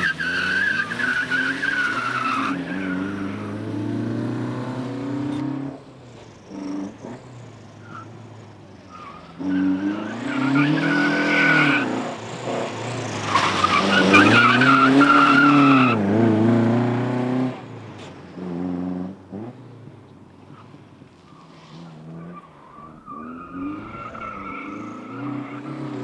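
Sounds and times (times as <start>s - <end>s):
car engine revving: 0.0s - 8.1s, 8.7s - 17.7s, 21.3s - 26.0s
tyres squealing: 8.8s - 16.0s, 22.2s - 26.0s.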